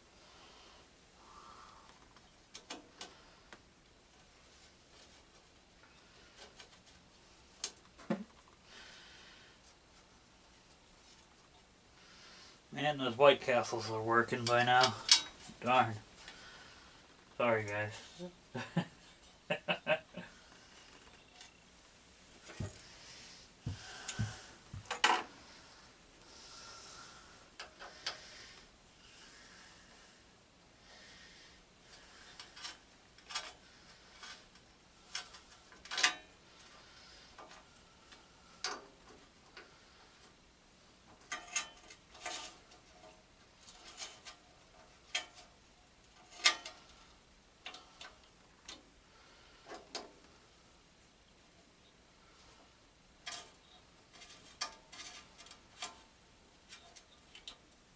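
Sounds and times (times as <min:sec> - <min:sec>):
tools and parts clinking: 0:14.4 - 0:15.6, 0:35.1 - 0:36.4, 0:41.2 - 0:45.5, 0:46.1 - 0:46.9, 0:53.2 - 0:56.0.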